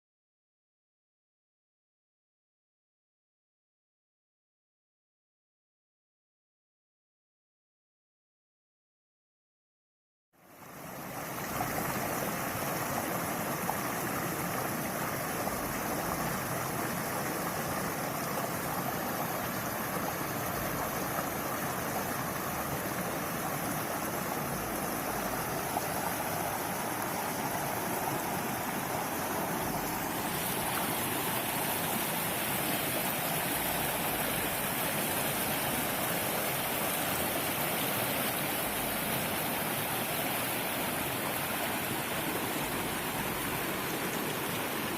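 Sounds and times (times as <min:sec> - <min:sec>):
river water rushing: 0:10.6 - 0:44.9.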